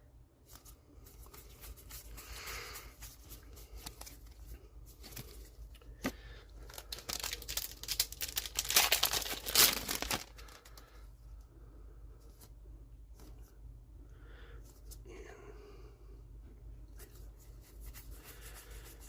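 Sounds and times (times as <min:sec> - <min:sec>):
wrapper tearing and crinkling: 0:06.6 - 0:10.8.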